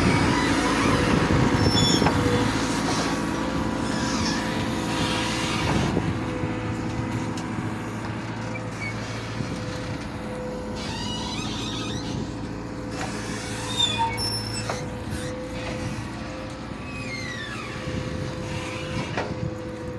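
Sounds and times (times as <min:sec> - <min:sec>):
short high squeaks: 0:00.0 - 0:02.5, 0:10.8 - 0:12.3, 0:12.9 - 0:16.0, 0:16.7 - 0:19.0
diesel engine running: 0:00.0 - 0:19.9.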